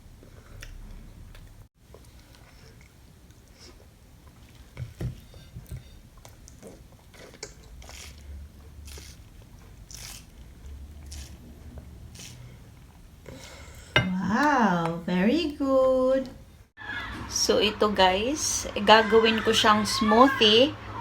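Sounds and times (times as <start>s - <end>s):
toddler chewing: 5.6s - 13.0s.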